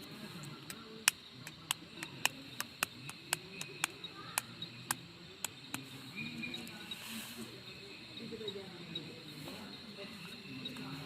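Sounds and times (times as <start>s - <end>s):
sharp clicks: 0.4s - 5.9s.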